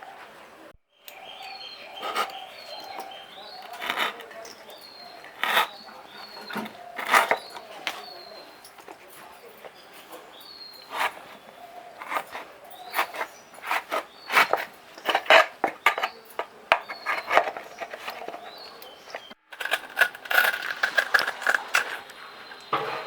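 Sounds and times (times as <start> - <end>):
knife chopping fruit: 10.8 - 21.7.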